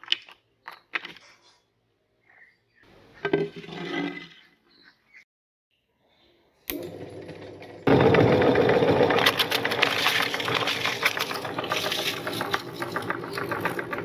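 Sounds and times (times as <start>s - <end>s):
meat grinder motor humming: 6.7s - 14.0s.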